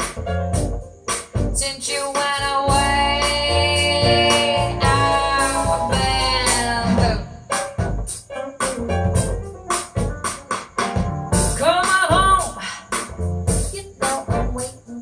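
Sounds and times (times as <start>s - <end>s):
drum beat: 0.0s - 14.8s
keyboard chords: 2.7s - 11.7s.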